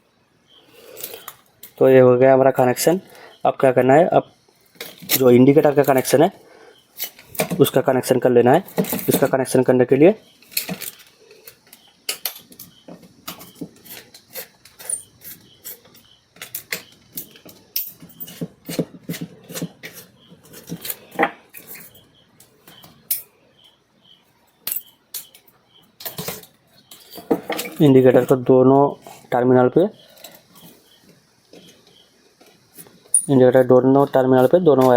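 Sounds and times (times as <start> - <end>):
clicks and taps of wires and screws: 10.5 - 14.8.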